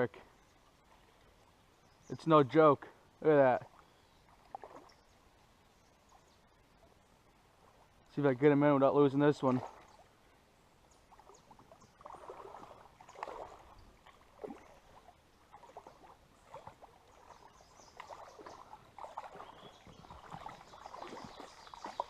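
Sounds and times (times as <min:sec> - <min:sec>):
fish splashing in water: 0:04.3 - 0:05.0, 0:11.1 - 0:22.0.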